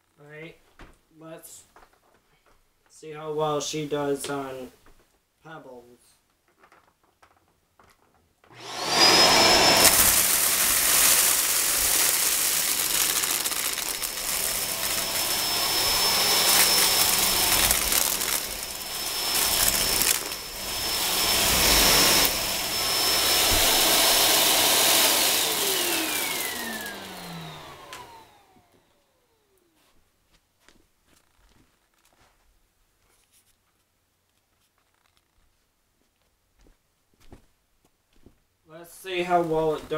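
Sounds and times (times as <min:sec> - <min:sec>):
vacuum sucking pebbles: 0:08.5 - 0:28.8
vacuum cleaner motor whine: 0:08.5 - 0:29.7.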